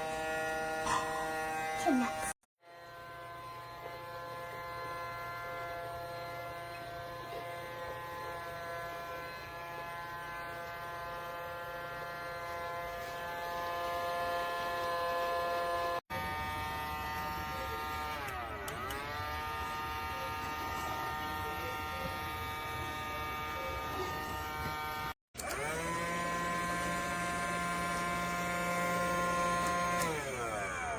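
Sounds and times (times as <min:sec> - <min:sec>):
small electric motor whining: 0:00.0 - 0:30.9.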